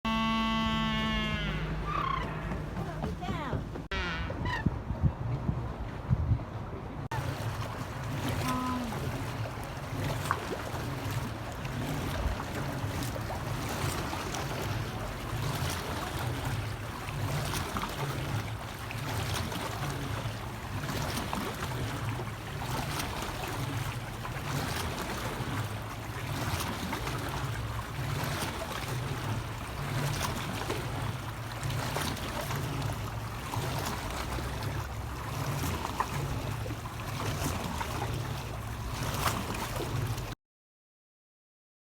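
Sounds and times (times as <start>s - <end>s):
low hum: 0.0s - 7.0s
wash like water or wind: 0.4s - 40.4s.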